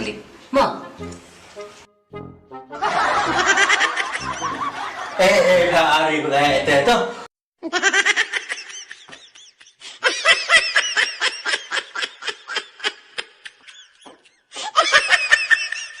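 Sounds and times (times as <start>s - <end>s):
high-pitched laughter: 2.8s - 5.5s, 7.6s - 16.0s.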